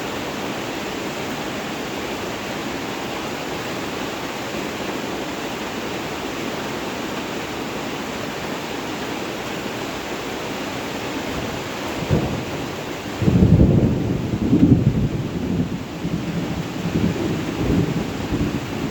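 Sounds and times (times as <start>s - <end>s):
steady rain falling: 0.0s - 18.9s
low rumble of thunder: 11.2s - 18.9s.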